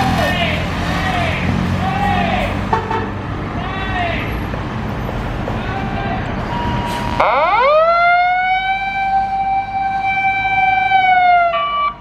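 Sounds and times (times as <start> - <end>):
fire engine siren wailing: 6.4 - 12.0.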